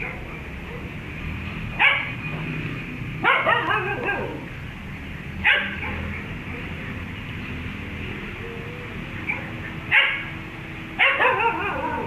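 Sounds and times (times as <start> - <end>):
dog barking: 0.0 - 1.0, 1.8 - 2.1, 3.2 - 4.5, 5.4 - 6.7, 9.3 - 10.3, 11.0 - 12.0.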